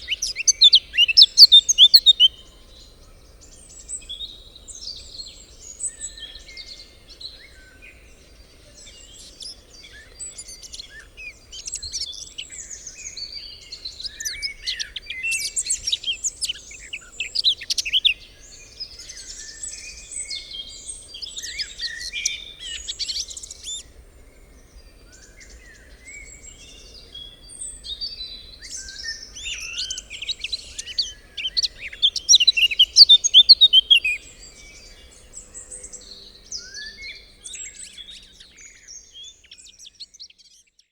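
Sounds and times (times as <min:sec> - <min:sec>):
birds singing: 0:00.0 - 0:40.9
warbling birdsong: 0:00.0 - 0:40.9.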